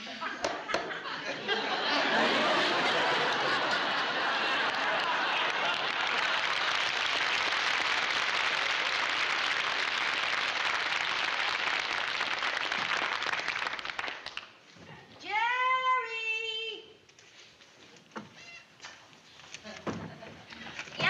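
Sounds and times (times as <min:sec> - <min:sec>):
audience applause: 0:01.9 - 0:14.5.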